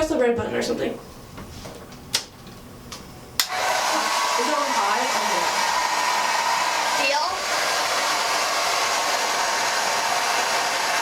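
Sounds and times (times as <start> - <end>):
hair dryer running: 3.4 - 11.0.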